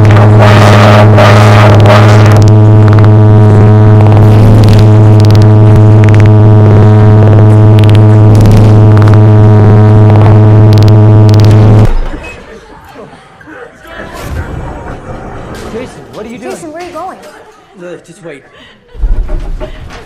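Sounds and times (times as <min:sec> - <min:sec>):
low buzzy droning tone: 0:00.0 - 0:12.2
rough crackling rumble: 0:00.0 - 0:12.2.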